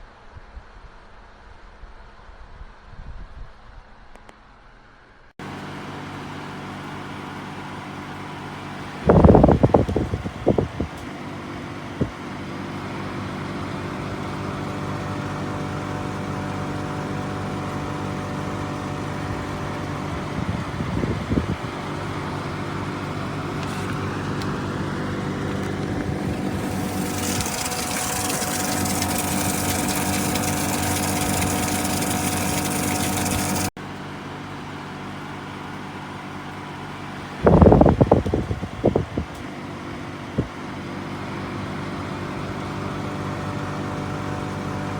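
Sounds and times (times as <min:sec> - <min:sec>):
fan air noise: 0:00.2 - 0:44.9
air conditioner humming: 0:05.5 - 0:14.5, 0:18.3 - 0:33.8.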